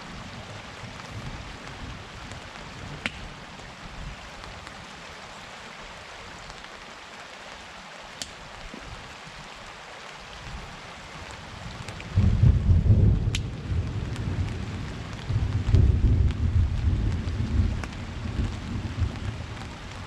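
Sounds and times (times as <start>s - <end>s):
steady rain falling: 0.0s - 20.0s
sharp drip ticks: 3.0s - 3.3s, 8.2s - 8.4s.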